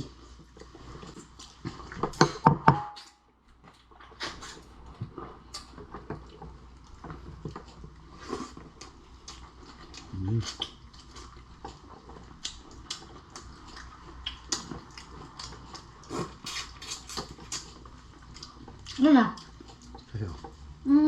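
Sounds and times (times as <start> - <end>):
eating clicks and smacks: 4.0 - 8.0, 8.7 - 20.6.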